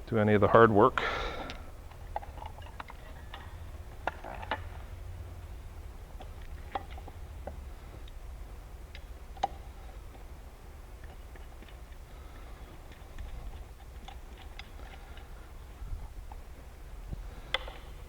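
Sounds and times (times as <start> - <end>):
steady low hum: 0.0 - 18.0
clicks and taps of parts handled: 17.1 - 17.9.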